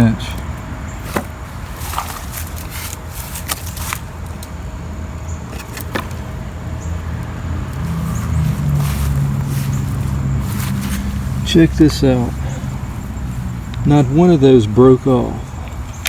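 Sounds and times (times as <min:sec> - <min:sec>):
low steady rumble: 0:00.0 - 0:16.0
sharp clicks and rattles: 0:15.4 - 0:16.0.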